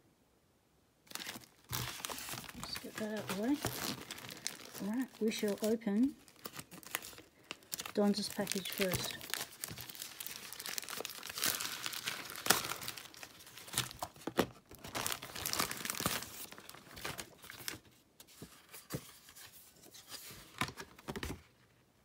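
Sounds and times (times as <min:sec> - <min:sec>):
wrapping torn and crumpled: 0:01.1 - 0:17.9.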